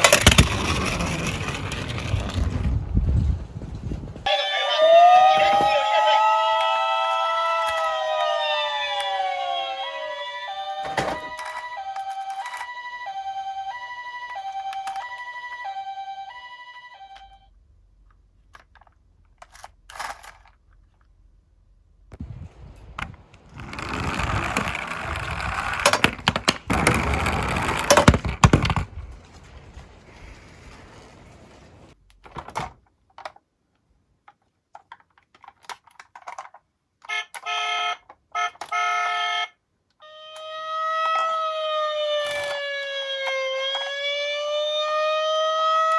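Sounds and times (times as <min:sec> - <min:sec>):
two-tone emergency siren: 0:04.3 - 0:17.5, 0:37.1 - 0:45.9.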